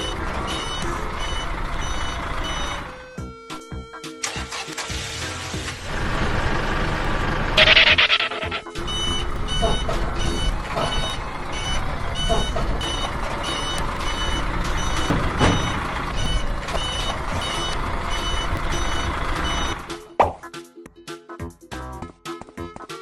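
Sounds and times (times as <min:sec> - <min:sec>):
toy truck reversing beeps: 0:00.0 - 0:03.0, 0:07.6 - 0:19.9
engine-like rumble: 0:00.0 - 0:03.2, 0:04.2 - 0:20.0.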